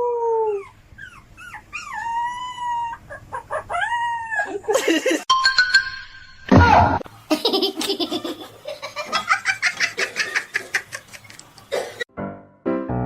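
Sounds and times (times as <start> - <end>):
person laughing hard: 4.5 - 5.3.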